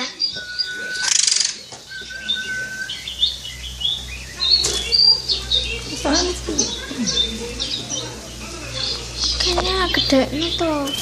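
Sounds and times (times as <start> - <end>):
bird singing whistled notes: 0.0 - 8.1
high bird chirps and twitters: 0.0 - 11.0
buzzy bird rattle: 1.0 - 1.6.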